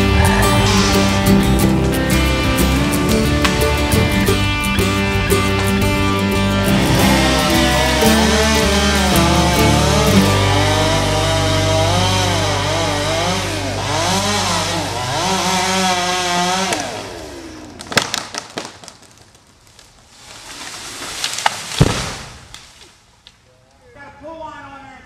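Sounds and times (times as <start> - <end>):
chainsaw cutting: 0.0 - 19.1
sharp knocks and cracks: 17.8 - 19.9, 20.5 - 23.4.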